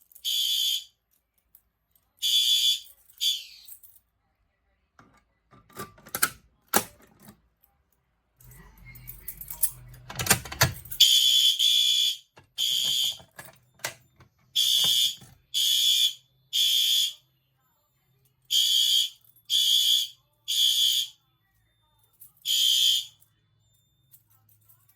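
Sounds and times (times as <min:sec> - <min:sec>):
fire alarm horn blasts: 0:00.2 - 0:00.9, 0:02.2 - 0:03.5, 0:11.0 - 0:13.3, 0:14.6 - 0:17.2, 0:18.5 - 0:21.2, 0:22.4 - 0:23.2
low hum with rattle: 0:08.4 - 0:11.0.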